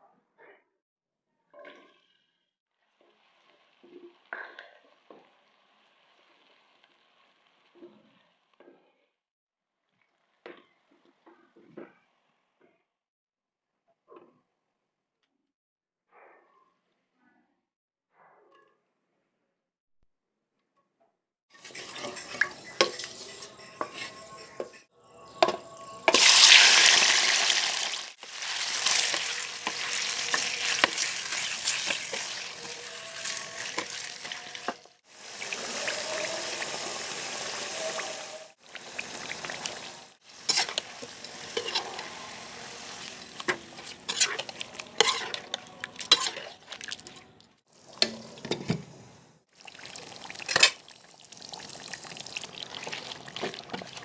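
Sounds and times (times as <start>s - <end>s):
spoon stirring and clicking on pan: 21.6s - 37.2s, 37.8s - 48.9s, 49.7s - 54.0s
food sizzling in hot oil: 21.6s - 54.0s.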